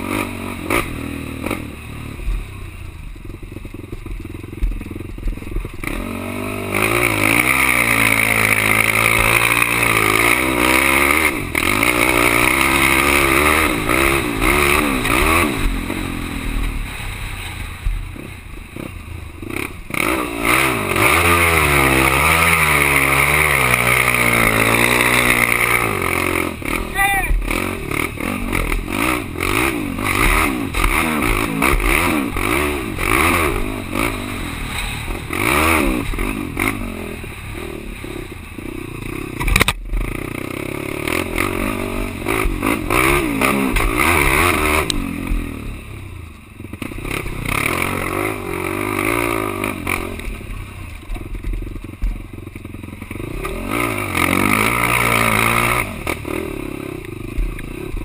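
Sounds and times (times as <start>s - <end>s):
quad engine revving: 0.0s - 2.5s, 3.2s - 17.3s, 17.9s - 58.0s
sharp crack: 6.6s - 38.6s, 39.3s - 40.2s, 41.2s - 45.5s.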